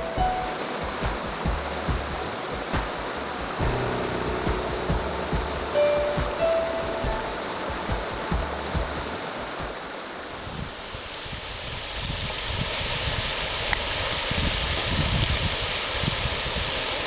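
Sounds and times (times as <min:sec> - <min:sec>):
low rumbles: 0:00.0 - 0:10.8
creek water running over rocks: 0:00.0 - 0:17.0.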